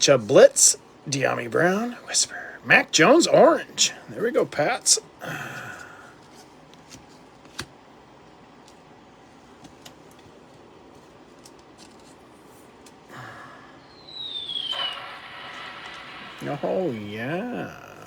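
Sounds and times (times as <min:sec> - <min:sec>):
cards clicking: 0:06.7 - 0:07.7, 0:11.4 - 0:12.2.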